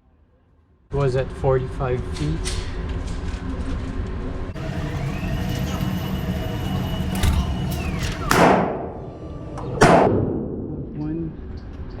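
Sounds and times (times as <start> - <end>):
thin rising whine: 4.6 - 10.8
steady low hum: 4.6 - 12.0
loud gunshots: 8.3 - 9.0, 9.8 - 10.3.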